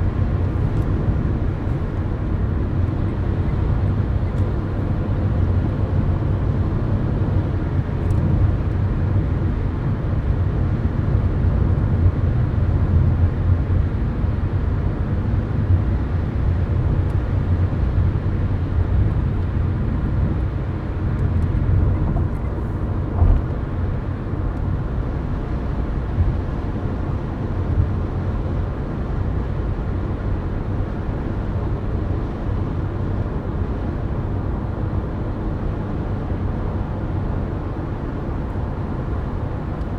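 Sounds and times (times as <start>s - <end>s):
car road noise from inside: 0.0s - 9.6s, 17.8s - 30.1s
brief thump: 23.2s - 23.6s.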